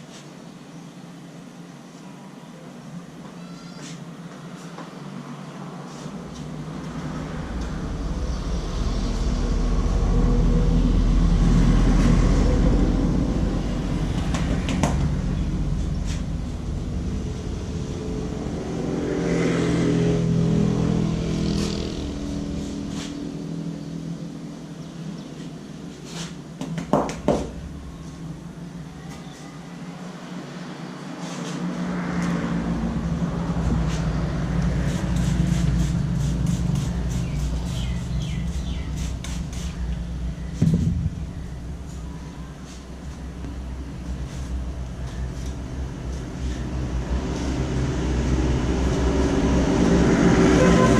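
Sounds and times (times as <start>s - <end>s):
vehicle engine rumble passing: 5.2s - 26.6s, 27.2s - 50.9s
sharp knocks: 26.6s - 27.7s, 40.6s - 41.3s.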